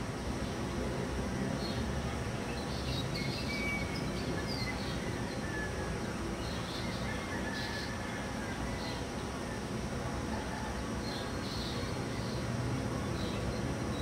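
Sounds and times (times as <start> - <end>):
small birds chirping: 1.6 - 7.6, 11.2 - 14.0.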